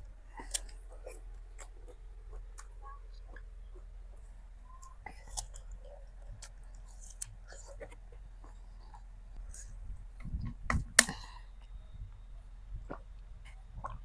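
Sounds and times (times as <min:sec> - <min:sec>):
person chewing crunchy fruit: 0:00.0 - 0:09.9.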